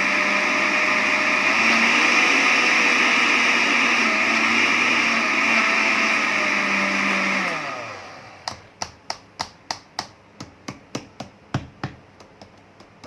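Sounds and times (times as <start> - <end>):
blender grinding seeds: 0.0 - 8.5.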